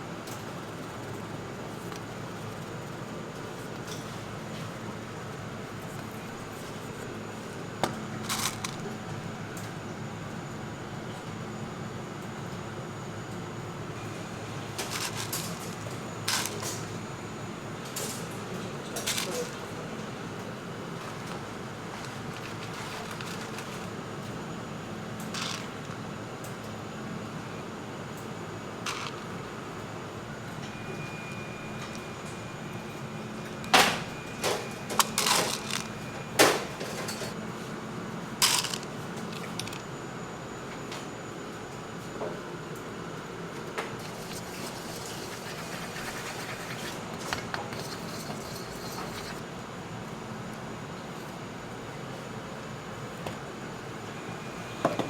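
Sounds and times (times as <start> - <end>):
steady machine hum: 0.0 - 55.0
clatters and crinkles of handling: 7.8 - 8.9, 14.7 - 17.0, 17.9 - 19.7, 20.9 - 24.0, 28.9 - 29.3, 34.4 - 37.4, 38.4 - 39.9, 43.9 - 49.4
kitchen hum: 18.0 - 24.4, 33.9 - 37.4, 38.3 - 39.8, 43.8 - 49.4.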